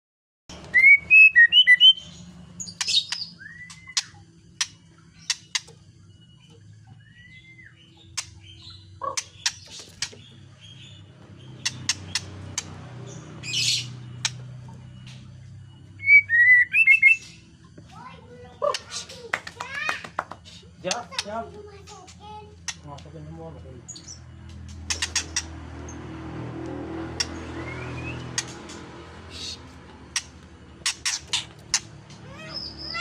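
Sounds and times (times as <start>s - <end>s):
songbird whistling: 0.5s - 19.3s, 27.2s - 33.0s
harsh rasping bird calls: 0.5s - 22.9s, 23.8s - 33.0s
sharp clicks: 30.0s - 32.2s.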